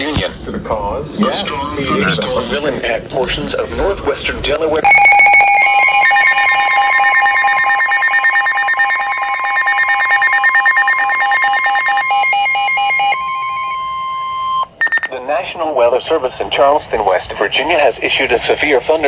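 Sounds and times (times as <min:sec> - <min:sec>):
rapidly pulsing alarm tone: 0:04.8 - 0:15.2
steady high alert tone: 0:04.8 - 0:15.2.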